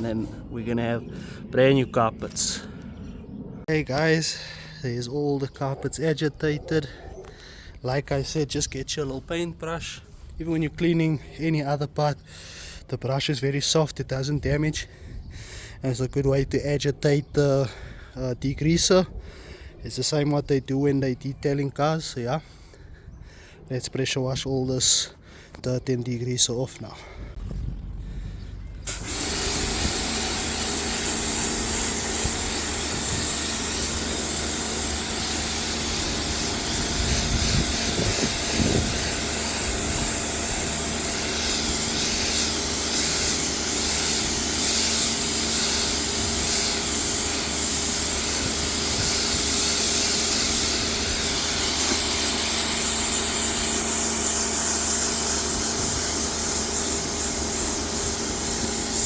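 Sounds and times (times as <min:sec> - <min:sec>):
pressure washer spray hiss: 0:28.7 - 0:59.0.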